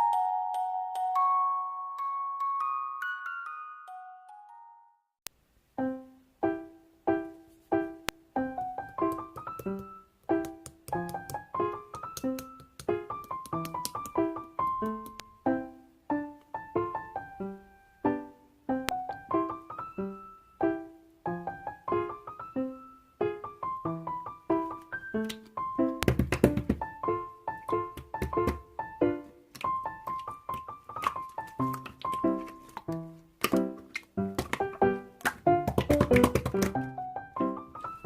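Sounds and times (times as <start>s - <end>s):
bouncy piano tune: 5.8s - 38.0s.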